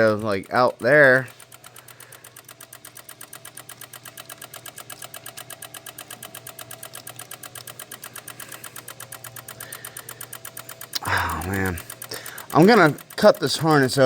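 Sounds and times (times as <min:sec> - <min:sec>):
relays clicking rapidly: 0:00.0 - 0:14.0
faint hum: 0:05.3 - 0:13.1.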